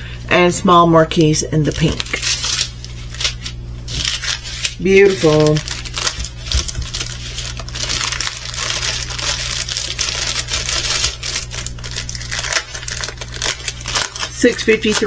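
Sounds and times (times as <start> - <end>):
small beads rattling in plastic bags: 4.0 - 15.0.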